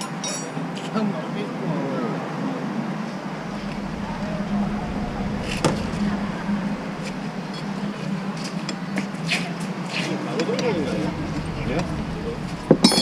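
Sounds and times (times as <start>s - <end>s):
excavator diesel engine running: 3.3s - 8.7s, 10.6s - 13.0s.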